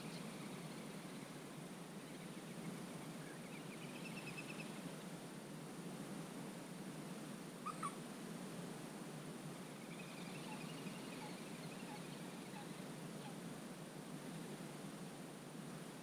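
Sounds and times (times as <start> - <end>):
steady low hiss: 0.0 - 16.0
bird trilling: 7.6 - 8.0.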